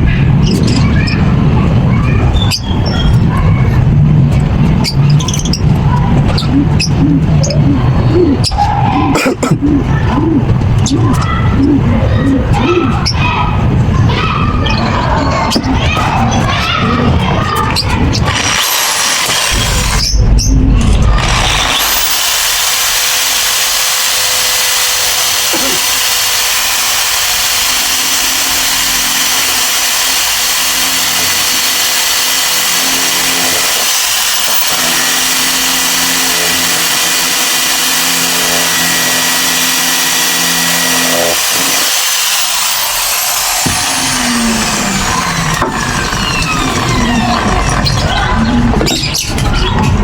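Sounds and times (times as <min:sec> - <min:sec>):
power tool running: 0:17.6 - 0:49.2.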